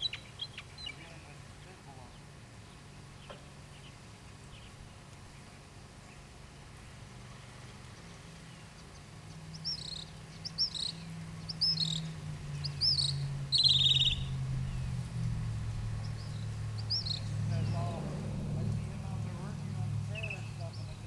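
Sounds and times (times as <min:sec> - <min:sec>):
bird chirping: 0:00.0 - 0:01.2, 0:07.9 - 0:21.0
steady low hum: 0:00.0 - 0:21.0.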